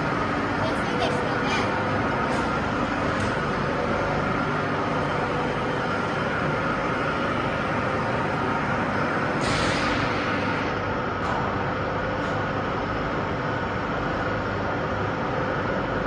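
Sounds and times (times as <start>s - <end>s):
faint machine whine: 0.0s - 16.0s.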